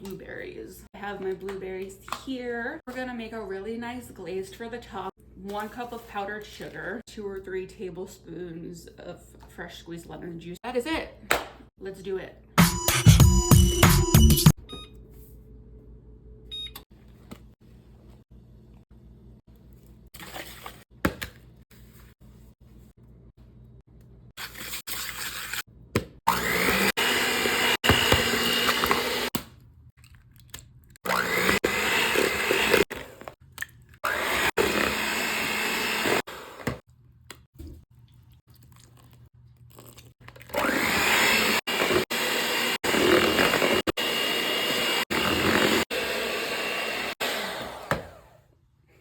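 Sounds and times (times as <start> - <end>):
electric kitchen mixer running: 26.3 - 29.3, 31.1 - 33.3, 34.0 - 36.8, 40.6 - 48.4.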